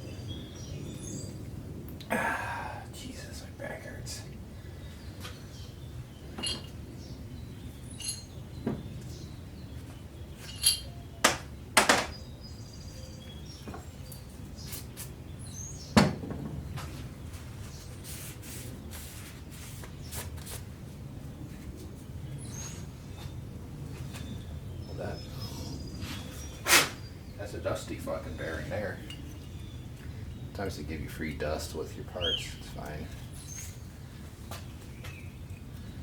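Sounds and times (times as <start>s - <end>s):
steady low hum: 0.0s - 36.0s
metal parts clinking on a bench: 6.4s - 6.8s, 8.0s - 8.4s, 10.4s - 11.0s.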